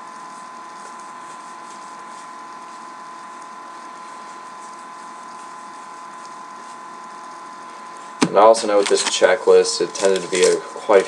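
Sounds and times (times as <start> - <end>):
constant high whine: 0.0 - 11.0
trading cards flicking: 8.2 - 10.6.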